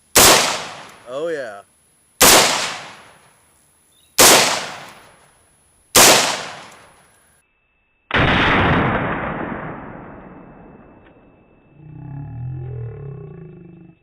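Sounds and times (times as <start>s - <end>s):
rifle shots echoing: 0.2s - 1.0s, 2.2s - 3.2s, 4.2s - 5.2s, 6.0s - 7.0s, 8.1s - 11.0s.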